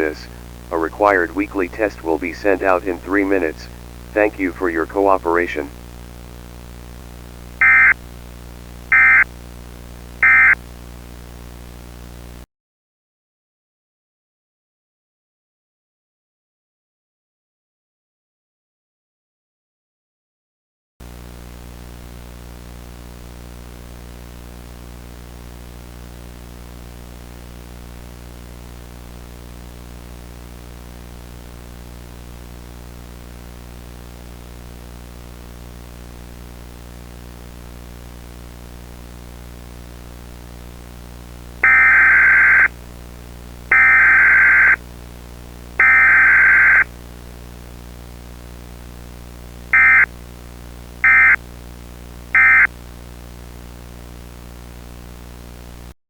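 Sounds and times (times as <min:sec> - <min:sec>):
low electronic hum: 0:00.0 - 0:12.4, 0:25.9 - 0:55.9
warbling alert data tones: 0:07.6 - 0:07.9, 0:09.0 - 0:09.2, 0:41.6 - 0:42.7, 0:43.7 - 0:44.8, 0:45.8 - 0:46.8, 0:49.8 - 0:50.0, 0:51.1 - 0:51.4, 0:52.4 - 0:52.7.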